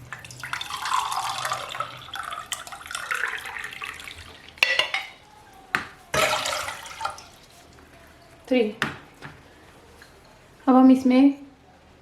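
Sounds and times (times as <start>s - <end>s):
water pouring into a pan: 0.0s - 4.6s, 6.2s - 7.3s.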